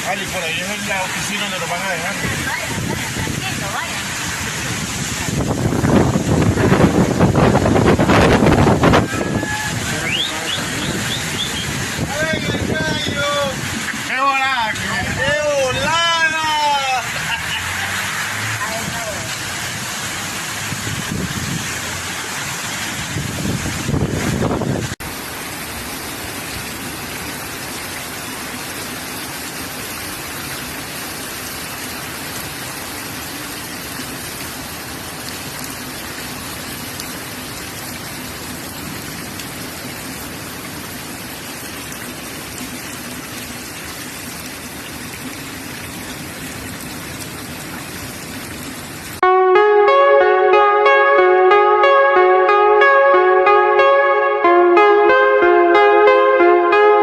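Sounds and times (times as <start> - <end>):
heavy rain and wind: 0.0 - 57.0
gusting rumble: 2.2 - 12.8.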